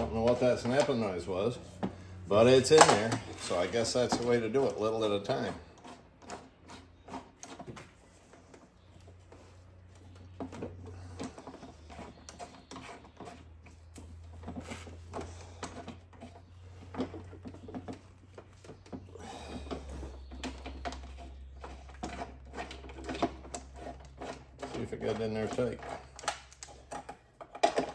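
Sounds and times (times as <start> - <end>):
hand tool clicks and metal knocks: 1.8 - 6.4.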